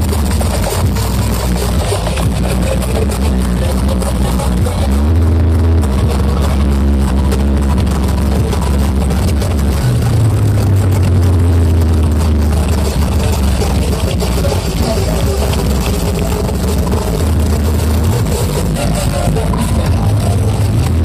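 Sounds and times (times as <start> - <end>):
loud bass-heavy music: 0.0 - 21.0.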